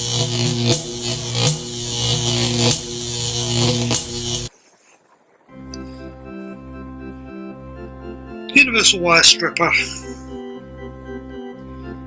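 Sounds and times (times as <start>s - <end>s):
soft music with held chords: 5.5s - 12.0s
background music: 5.6s - 12.0s.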